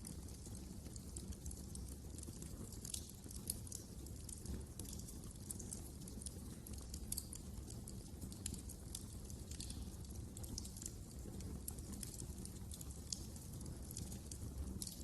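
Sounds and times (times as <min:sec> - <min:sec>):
low rumble of burning: 0:00.0 - 0:15.0
wood fire crackling: 0:00.0 - 0:15.0.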